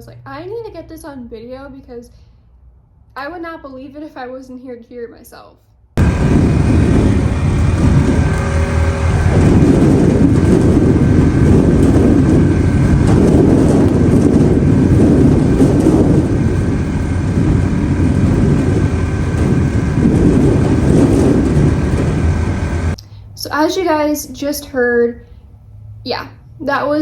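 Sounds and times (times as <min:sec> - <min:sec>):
gusting wind against trailer: 0:06.0 - 0:25.0.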